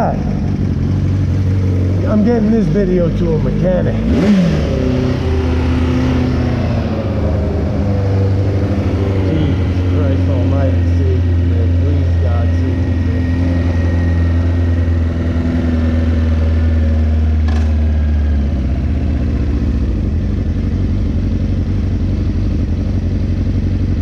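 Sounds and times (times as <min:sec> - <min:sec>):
motorcycle engine idling: 0:00.0 - 0:24.0.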